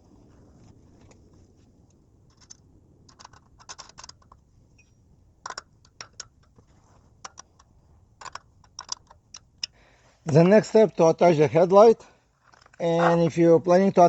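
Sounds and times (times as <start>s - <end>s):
small metal clicks: 2.3s - 10.5s, 12.4s - 13.3s.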